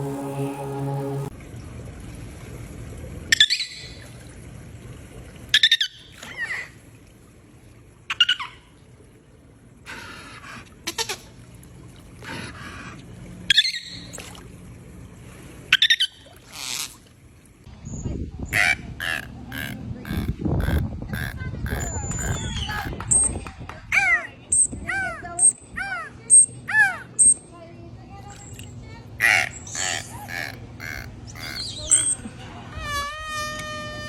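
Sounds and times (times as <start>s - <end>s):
steady low background: 0.0s - 1.3s
dolphin squeaking whistles: 13.5s - 14.2s, 21.2s - 23.3s, 31.3s - 32.2s, 32.8s - 34.0s.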